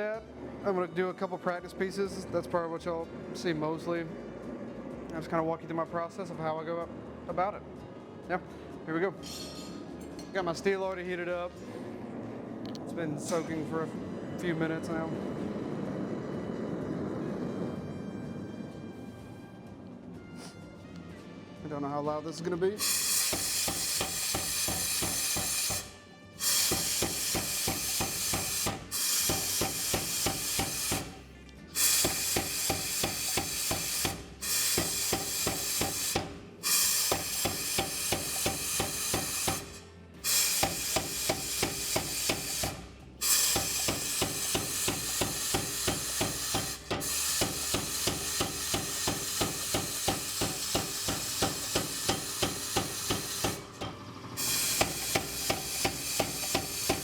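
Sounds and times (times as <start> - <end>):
power hammer striking hot metal: 22.8 - 57.0.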